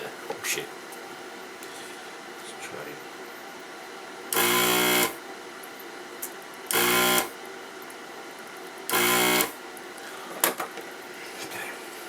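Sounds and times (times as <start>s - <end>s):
desoldering vacuum pump buzzing: 3.9s - 5.4s, 6.1s - 10.0s.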